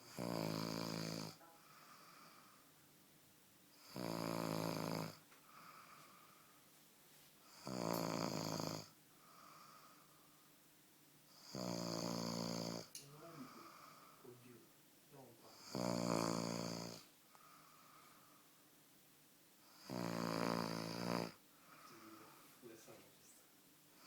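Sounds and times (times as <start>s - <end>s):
loud snoring: 0.0s - 1.4s, 3.8s - 5.2s, 7.5s - 9.7s, 11.4s - 14.0s, 15.5s - 17.1s, 19.7s - 21.4s
soft breaths: 1.4s - 2.9s, 5.2s - 7.7s, 9.1s - 10.7s, 13.0s - 15.6s, 17.0s - 18.8s, 21.3s - 24.0s.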